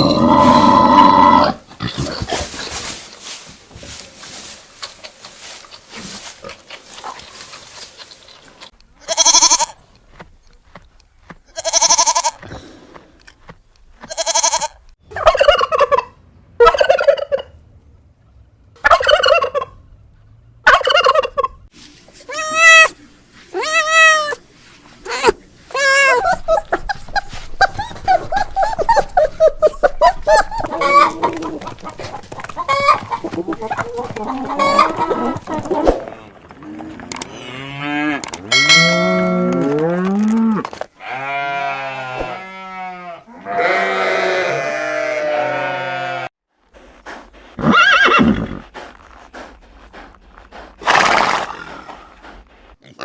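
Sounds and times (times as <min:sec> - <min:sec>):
chickens clucking: 0:18.8 - 0:19.8, 0:25.2 - 0:36.2
animal drawn-out pitched cries: 0:25.1 - 0:36.0
hoof clops: 0:26.3 - 0:37.4
horse neighing: 0:47.6 - 0:48.6.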